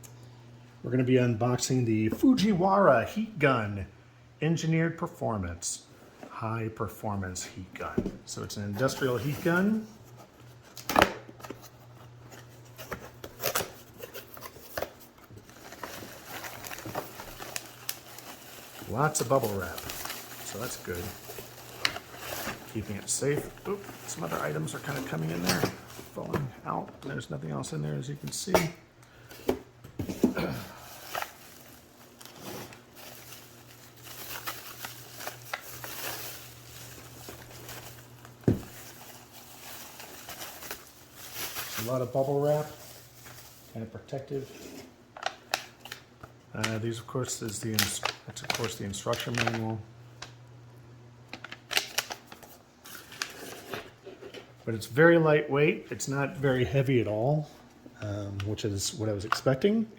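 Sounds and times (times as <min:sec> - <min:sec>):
bubble wrap crinkling: 0:08.8 - 0:26.8, 0:30.2 - 0:44.4, 0:47.4 - 0:50.4, 0:51.3 - 0:54.0.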